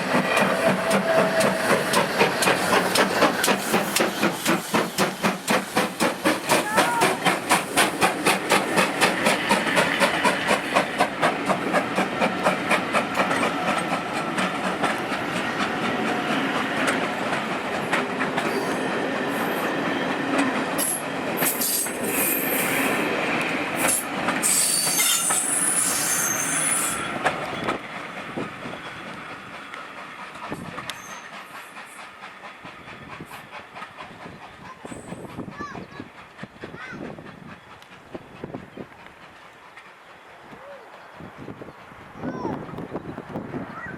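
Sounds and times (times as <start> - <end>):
train rolling on rails: 0.0 - 43.9
high-pitched wheel squeals: 24.4 - 27.0.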